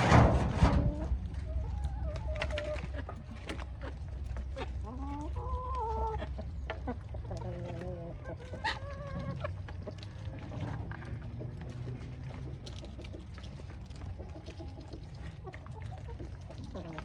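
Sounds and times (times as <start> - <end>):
steady low rumble: 0.0 - 7.8
chickens clucking: 0.0 - 17.0.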